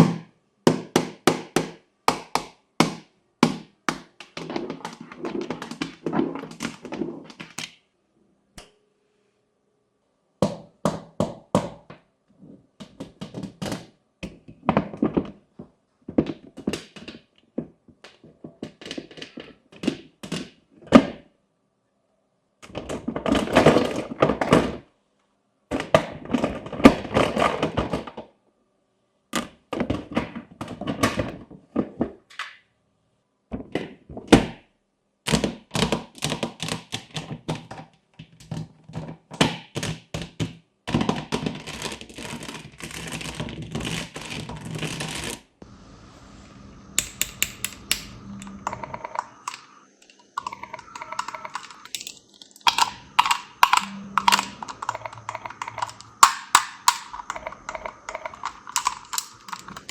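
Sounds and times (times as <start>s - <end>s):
steady hum: 45.6s - 59.9s
plastic fidget toys clicking: 47.0s - 59.9s.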